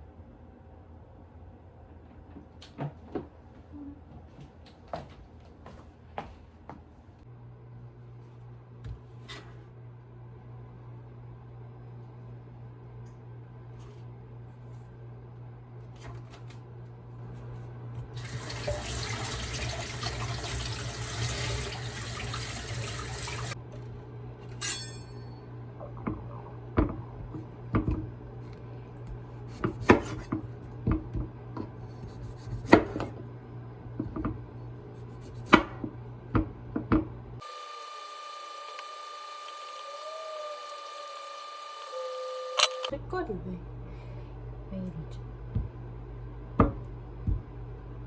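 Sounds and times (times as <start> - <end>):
water running from a tap: 18.1 - 23.6.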